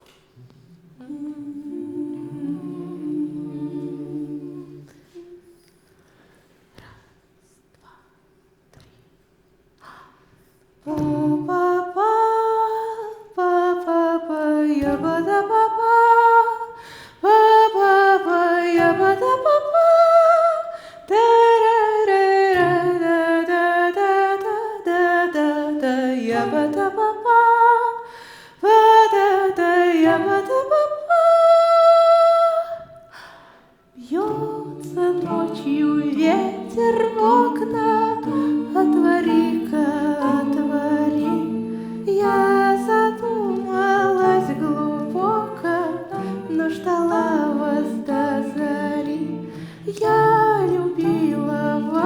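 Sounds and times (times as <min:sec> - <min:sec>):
a cappella voices singing: 0:00.0 - 0:07.1, 0:10.8 - 0:52.0
voices humming a chord: 0:01.0 - 0:05.4, 0:34.1 - 0:52.0.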